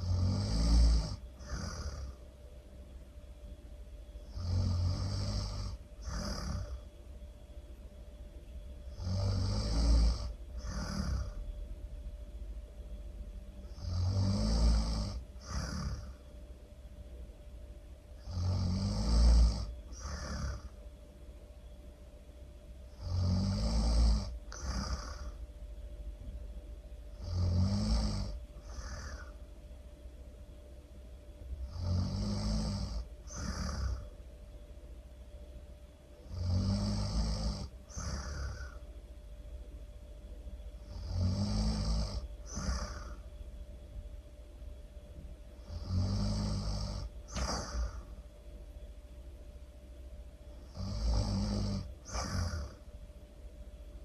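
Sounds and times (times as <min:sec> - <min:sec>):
loud snoring: 0:00.0 - 0:02.2, 0:04.2 - 0:06.9, 0:08.9 - 0:11.5, 0:13.6 - 0:16.2, 0:18.2 - 0:20.8, 0:22.9 - 0:25.4, 0:27.1 - 0:29.4, 0:31.6 - 0:34.2, 0:36.2 - 0:38.8, 0:40.8 - 0:43.3, 0:45.6 - 0:48.2, 0:50.6 - 0:52.9.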